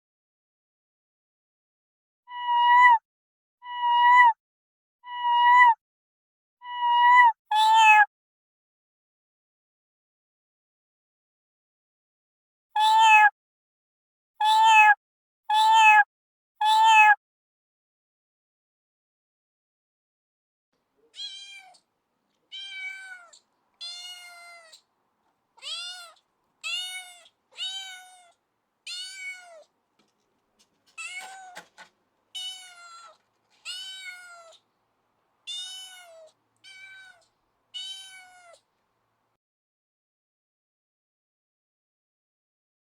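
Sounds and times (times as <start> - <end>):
cat meowing: 6.6 - 8.1, 12.8 - 13.3, 14.4 - 16.0, 16.6 - 17.2, 21.0 - 24.9, 25.6 - 29.7, 30.8 - 34.7, 35.4 - 38.7.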